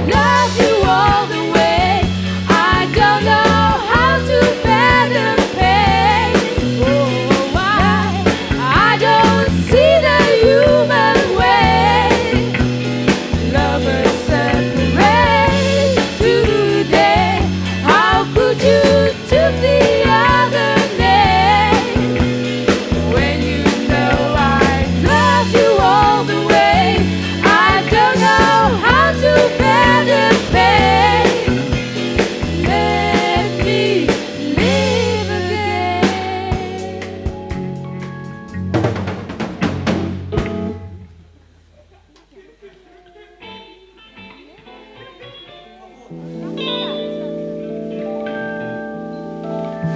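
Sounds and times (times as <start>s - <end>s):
person singing: 0.0s - 37.3s
drums keeping a steady beat: 0.0s - 42.9s
bass and guitars: 0.0s - 49.9s.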